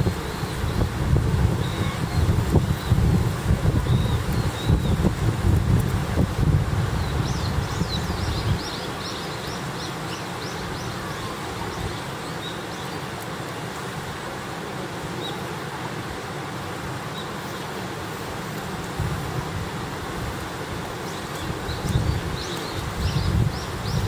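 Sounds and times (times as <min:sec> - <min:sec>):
low wind rumble: 0:00.0 - 0:08.8, 0:18.8 - 0:24.0
campfire hissing: 0:00.0 - 0:24.0.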